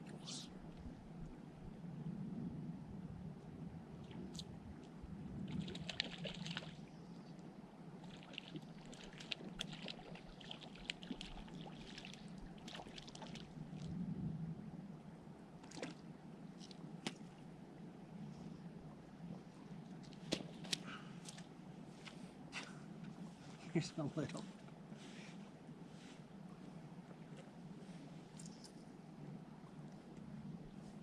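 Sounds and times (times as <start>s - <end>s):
water splashing and trickling: 5.4s - 6.9s, 8.0s - 14.0s, 15.6s - 17.4s.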